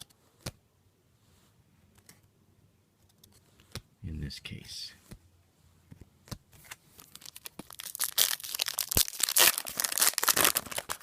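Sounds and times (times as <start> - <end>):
foil wrapper tearing and crinkling: 7.0 - 11.0.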